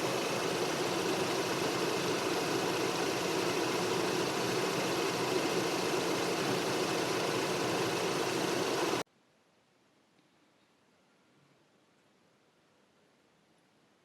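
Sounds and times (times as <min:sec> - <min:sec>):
rotary engine idling: 0:00.0 - 0:09.0.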